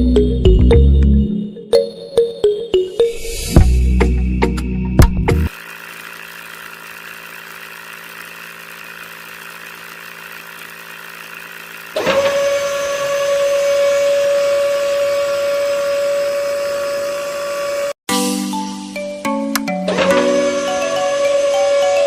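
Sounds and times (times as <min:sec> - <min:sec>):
electric motor whine: 0:05.5 - 0:18.0, 0:20.0 - 0:22.0.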